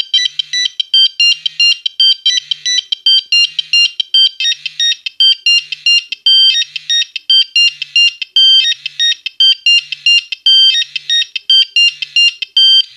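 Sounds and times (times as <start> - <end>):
monophonic phone ringtone: 0.0 - 12.9.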